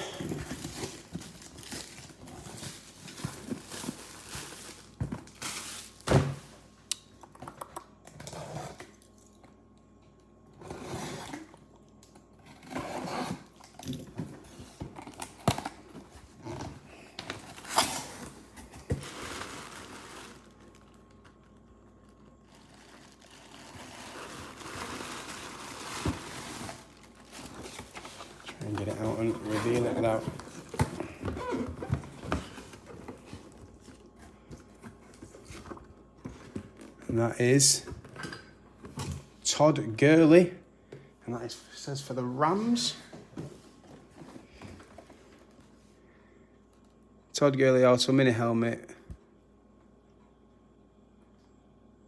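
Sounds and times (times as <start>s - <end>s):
plastic wrap crinkling and tearing: 0.0s - 6.5s, 17.4s - 21.2s, 22.0s - 33.5s
cardboard rustling and scraping: 0.0s - 6.7s, 22.5s - 37.3s.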